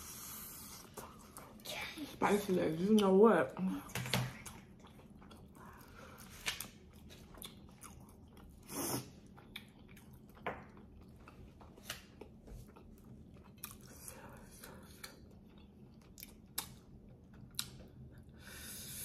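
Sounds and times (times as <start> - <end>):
person chewing: 4.3 - 18.4.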